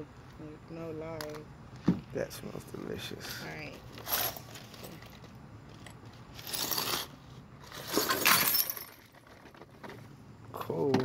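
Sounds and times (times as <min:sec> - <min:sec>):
glass jars clattering: 0:07.7 - 0:09.7.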